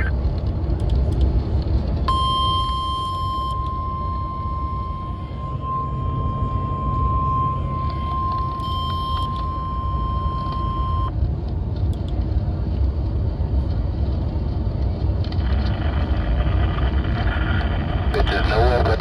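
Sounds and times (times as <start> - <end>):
radio static with low rumble: 0.0 - 11.1, 13.0 - 19.0
steady alarm tone: 2.1 - 11.1.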